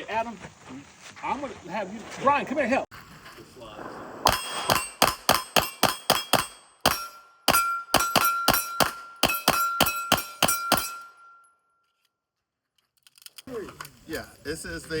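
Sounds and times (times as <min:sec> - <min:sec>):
metallic ringing of steel targets: 0:04.3 - 0:11.6.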